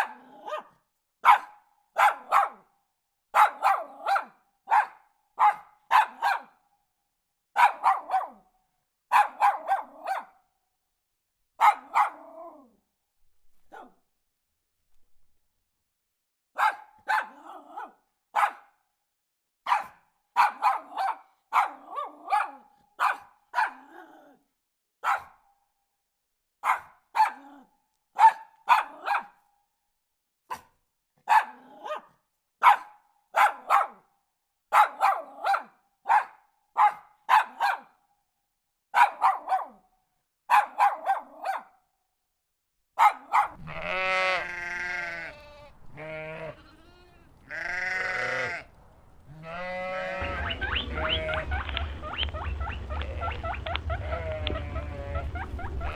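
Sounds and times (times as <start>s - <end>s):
dog barking: 0.0s - 6.7s, 7.5s - 10.6s, 11.6s - 12.8s, 13.6s - 14.1s, 16.5s - 18.9s, 19.6s - 24.4s, 25.0s - 25.6s, 26.6s - 29.5s, 30.4s - 38.1s, 38.9s - 41.9s, 43.0s - 45.3s, 50.2s - 55.9s
long wavering bleat: 43.6s - 48.7s, 49.3s - 51.4s.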